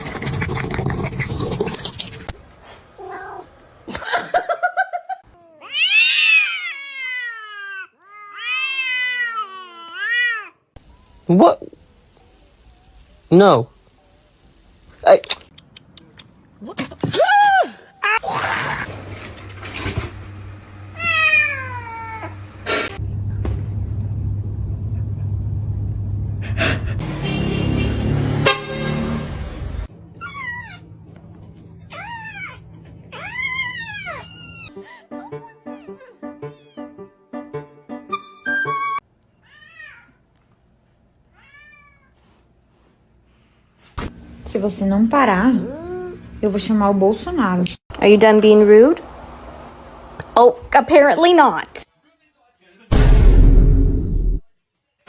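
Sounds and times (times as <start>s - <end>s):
cat yowling: 3.0s - 3.5s, 5.4s - 10.6s, 21.0s - 22.4s, 30.2s - 30.9s, 31.9s - 37.0s, 41.3s - 42.2s
steady low hum: 22.4s - 27.0s.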